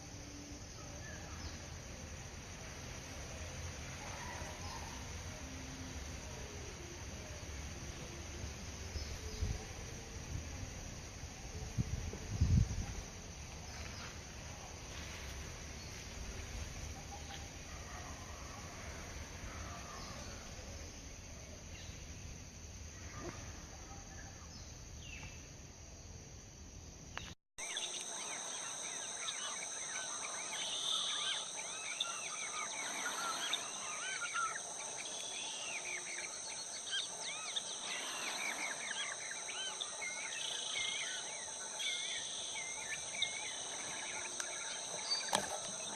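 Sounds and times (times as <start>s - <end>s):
high-pitched insect drone: 27.6s - 45.9s.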